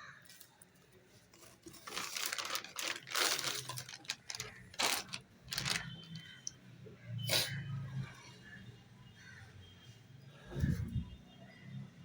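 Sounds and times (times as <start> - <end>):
paper or plastic crinkling: 1.3 - 6.5
packaging rustling and clicking: 1.4 - 6.5.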